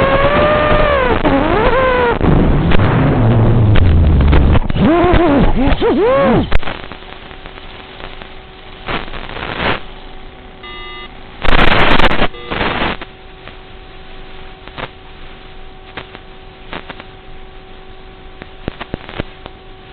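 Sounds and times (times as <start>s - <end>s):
faint steady hum: 0.0s - 19.9s
short electronic beep: 10.6s - 11.1s, 12.2s - 12.7s.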